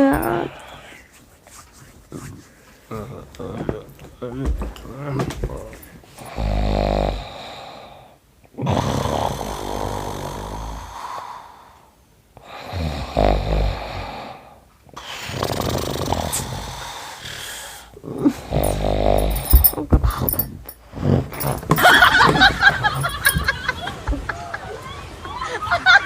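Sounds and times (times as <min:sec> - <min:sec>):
man fake snoring: 0:00.0 - 0:00.6, 0:06.2 - 0:11.6, 0:12.4 - 0:22.4.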